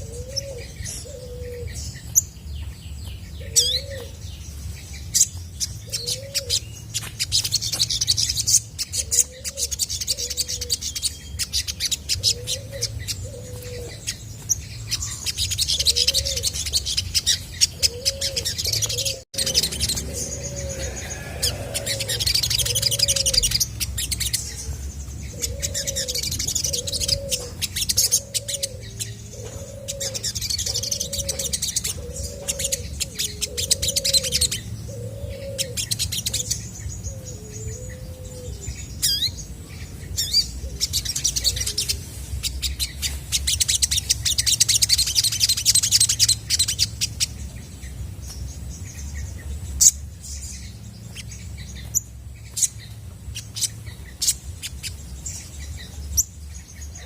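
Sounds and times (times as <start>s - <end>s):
bird twittering chirps: 0.0s - 57.0s
steady low hum: 0.0s - 57.0s
low hooting call: 17.8s - 23.7s.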